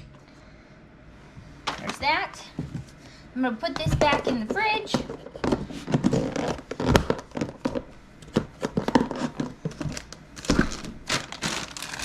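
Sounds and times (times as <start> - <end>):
rustling: 5.4 - 12.0.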